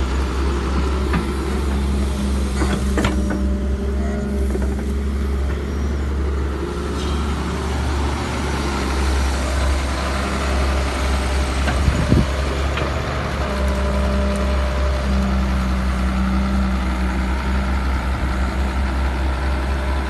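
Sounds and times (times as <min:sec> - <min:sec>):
excavator diesel engine running: 0:00.0 - 0:20.0.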